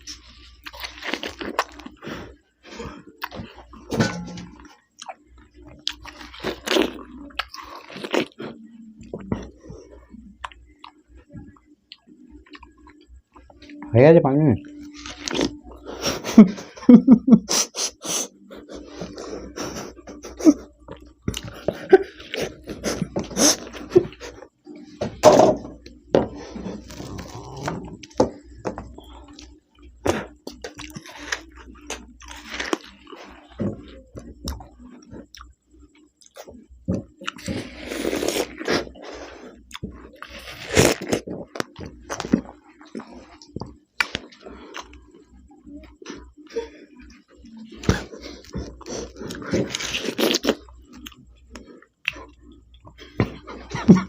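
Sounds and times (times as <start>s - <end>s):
people chewing watermelon: 0.0s - 13.9s, 14.6s - 54.0s
faint low hum: 0.0s - 54.0s.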